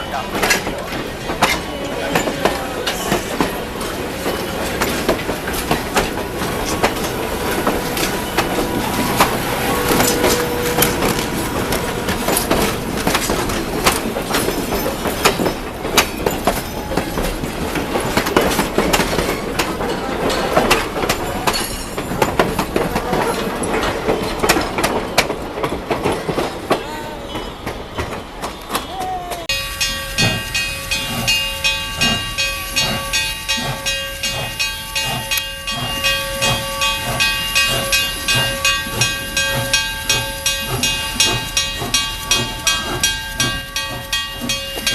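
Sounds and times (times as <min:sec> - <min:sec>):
train wheels clattering: 0:00.0 - 0:44.9
steady ringing tones: 0:29.5 - 0:44.9.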